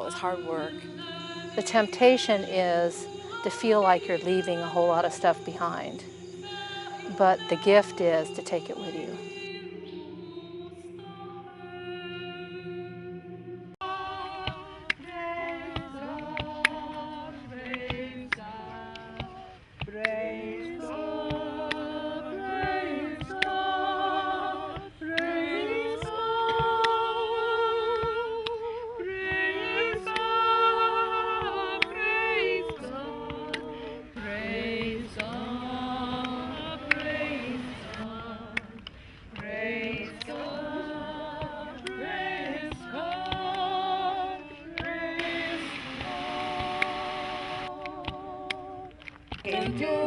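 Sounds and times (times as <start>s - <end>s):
voices singing a cappella hymn: 0.0s - 50.0s.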